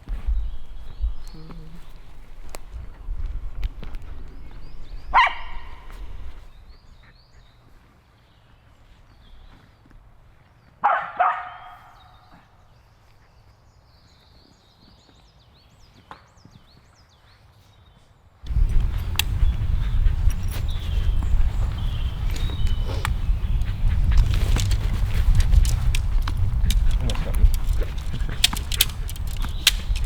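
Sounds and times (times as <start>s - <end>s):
dog barking: 5.1s - 5.8s, 10.8s - 12.1s.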